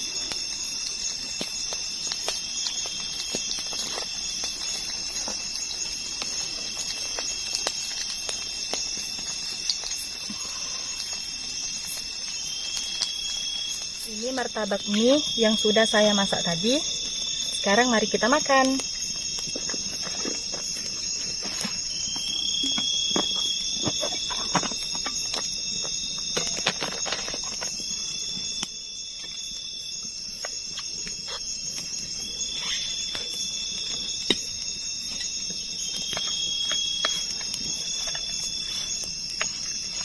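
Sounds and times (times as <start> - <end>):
insect trilling call: 0.0 - 40.0
insects buzzing: 0.0 - 40.0.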